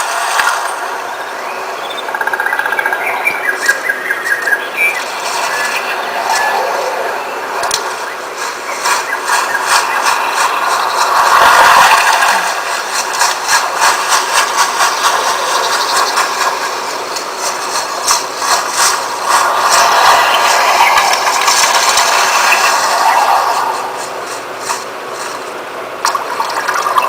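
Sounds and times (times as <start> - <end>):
clicking and clatter: 7.6 - 27.0.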